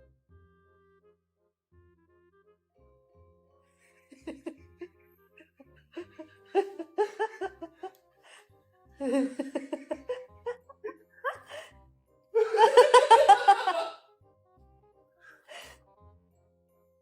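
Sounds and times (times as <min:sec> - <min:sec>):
background music: 0:00.0 - 0:17.0
person laughing: 0:04.0 - 0:07.9, 0:09.0 - 0:11.7, 0:12.4 - 0:14.0.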